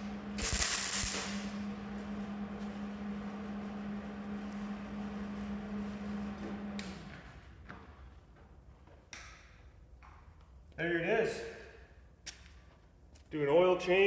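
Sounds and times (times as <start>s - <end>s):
welding machine humming: 0.0s - 7.2s
welding machine switch click: 0.4s - 1.5s.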